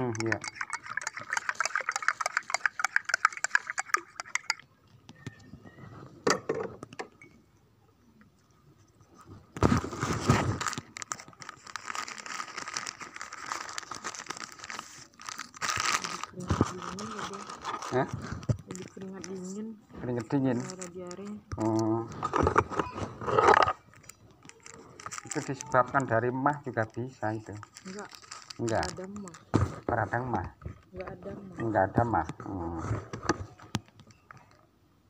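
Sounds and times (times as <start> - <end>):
handling clicks and rattles: 0.0 - 4.6
crinkling and crackling: 8.9 - 34.6.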